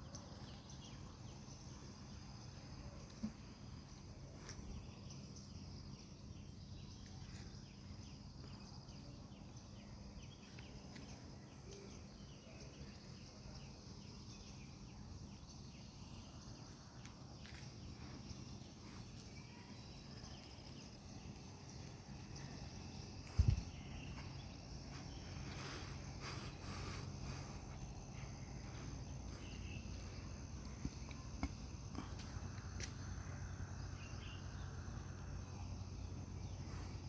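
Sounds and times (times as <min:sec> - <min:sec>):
short insect or bird chirps: 0:00.0 - 0:37.0
high insect drone: 0:00.1 - 0:37.0
low background rumble: 0:17.8 - 0:37.0.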